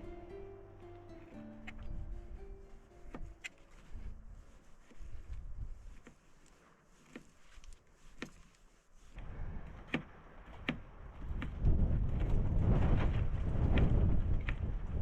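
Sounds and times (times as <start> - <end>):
wind gusting against microphone: 9.2 - 15.0.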